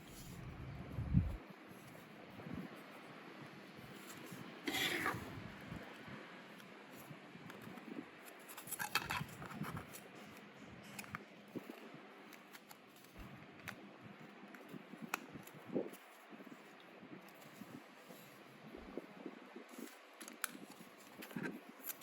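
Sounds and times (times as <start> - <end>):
packaging being opened by hand: 7.6 - 10.0.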